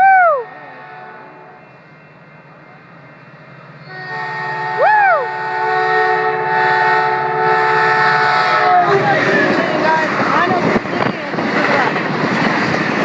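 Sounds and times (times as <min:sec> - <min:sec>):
rising and falling whoop: 0:00.0 - 0:00.6, 0:04.8 - 0:05.4
train air horn blast: 0:00.3 - 0:01.8, 0:03.8 - 0:09.5.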